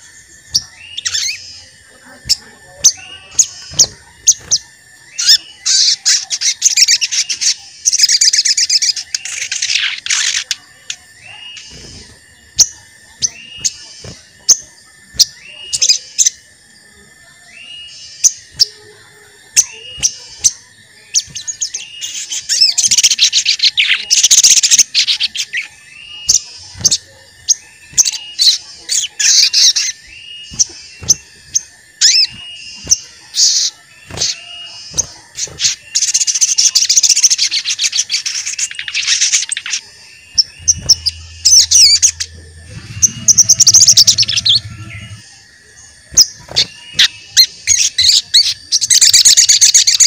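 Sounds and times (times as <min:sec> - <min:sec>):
rapid high bird chattering song: 0:00.0 - 0:16.5, 0:17.5 - 0:50.0
faint steady high tone: 0:10.4 - 0:50.0
sharp short bird chirps: 0:21.2 - 0:45.3.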